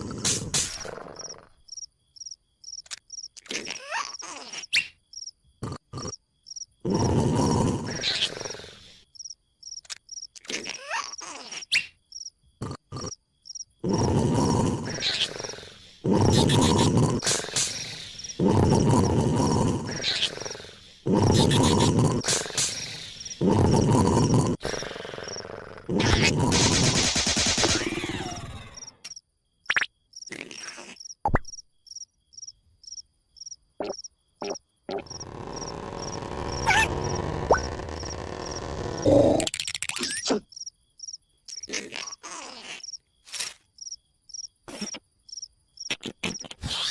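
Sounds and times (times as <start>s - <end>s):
cartoon cricket chirping: 0.0s - 46.9s
squeaky cartoon vocal noises: 3.4s - 5.0s, 7.7s - 8.8s, 10.3s - 12.0s, 13.9s - 27.0s, 27.6s - 29.1s, 29.7s - 31.2s, 33.8s - 40.5s, 41.5s - 43.6s, 45.8s - 46.9s.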